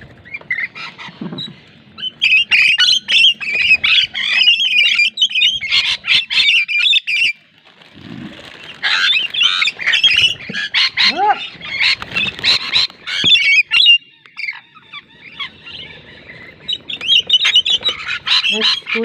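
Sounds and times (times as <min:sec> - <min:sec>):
lorikeets screeching: 0:00.2 - 0:07.4, 0:08.4 - 0:19.0.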